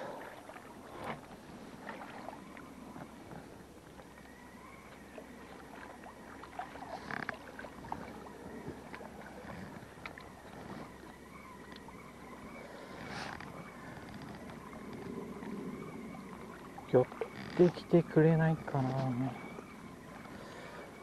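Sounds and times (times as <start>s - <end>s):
water lapping and splashing: 0.0s - 21.0s.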